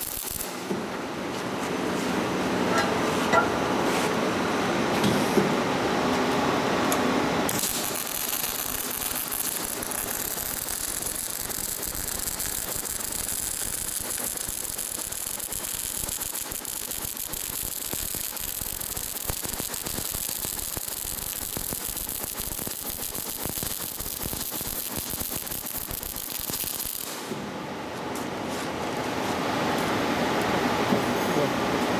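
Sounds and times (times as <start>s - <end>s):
welding arc crackling: 0.0s - 0.6s, 7.5s - 27.3s.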